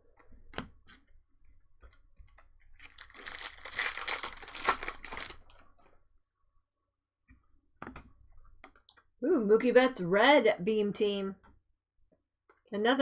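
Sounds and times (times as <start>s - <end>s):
foil wrapper tearing and crinkling: 2.7s - 5.6s.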